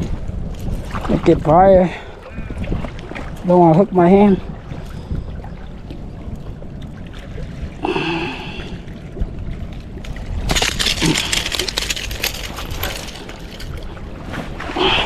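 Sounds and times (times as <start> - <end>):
low wind rumble: 0.0 - 15.0
fishing lure hooks rattling: 10.5 - 14.0.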